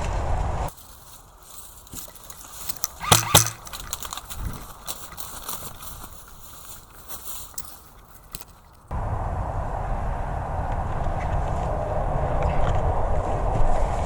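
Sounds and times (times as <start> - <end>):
scattered clicks and knocks: 0.7 - 8.9.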